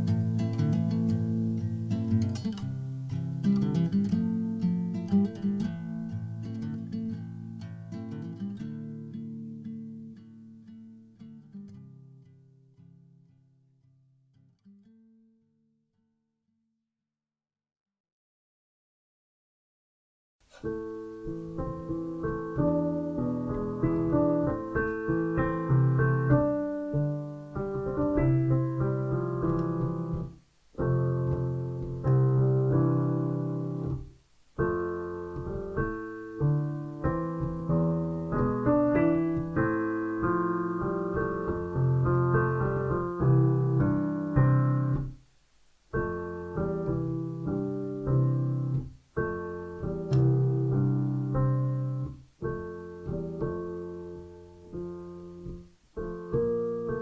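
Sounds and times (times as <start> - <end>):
solo piano music: 0.0 - 6.6, 20.5 - 57.0.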